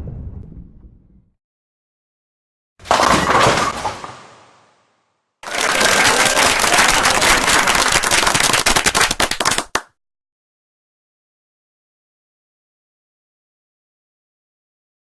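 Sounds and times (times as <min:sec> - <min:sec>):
bowling pins crashing: 0:02.8 - 0:04.6
people clapping hard: 0:05.4 - 0:10.0.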